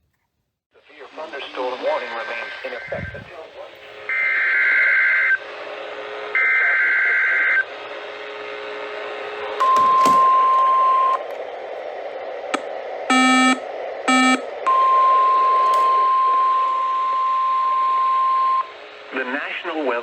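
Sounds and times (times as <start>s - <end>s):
radio hiss: 0.8s - 20.0s
steady alarm tone: 9.6s - 11.2s, 12.5s - 19.3s
short buzzy beeps: 13.1s - 15.0s.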